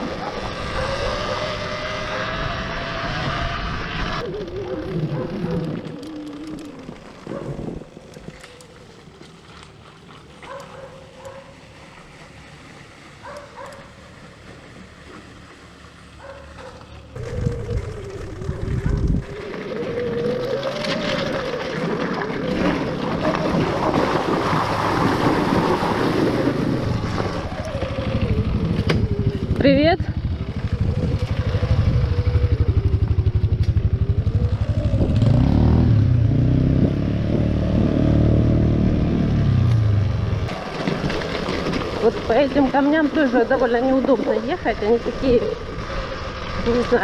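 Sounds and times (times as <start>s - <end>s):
electric motorcycle motor whine: 17.1s - 24.4s, 26.6s - 40.3s
wind noise on microphone: 17.2s - 38.4s.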